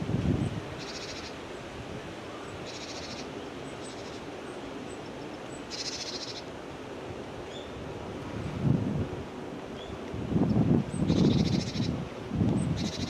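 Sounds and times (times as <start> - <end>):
outdoor background noise: 0.0 - 13.0
songbird buzzy trills: 0.4 - 1.4, 2.4 - 6.5, 9.8 - 13.0.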